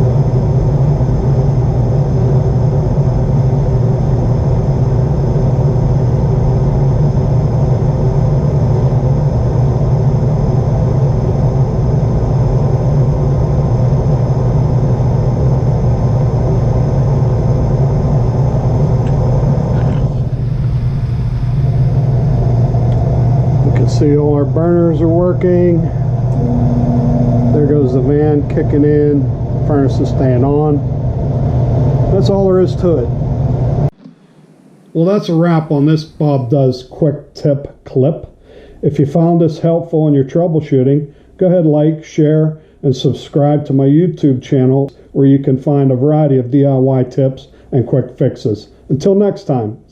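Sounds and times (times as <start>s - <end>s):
gas furnace running: 0.0s - 49.6s.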